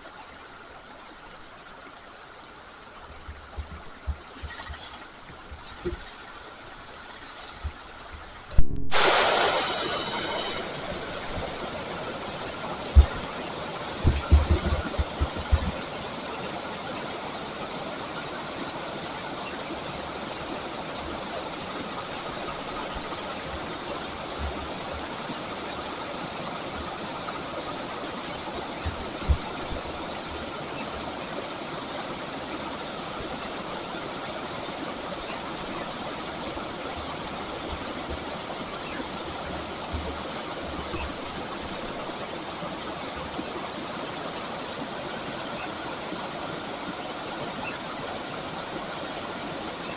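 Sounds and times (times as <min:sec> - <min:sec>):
river water rushing: 0:00.0 - 0:49.9
dull low thumps: 0:07.6 - 0:09.0, 0:13.0 - 0:13.3, 0:14.0 - 0:15.8.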